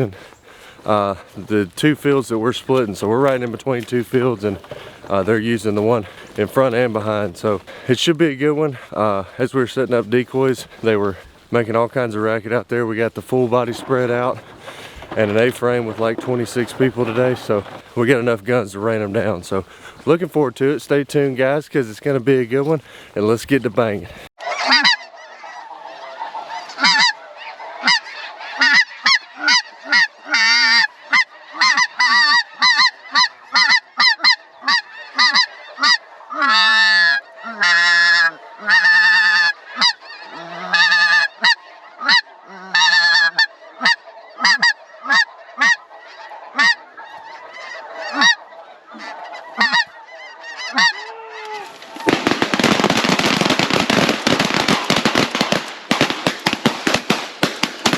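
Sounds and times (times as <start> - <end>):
geese honking: 0.0 - 57.9
shotgun fire: 52.1 - 57.9.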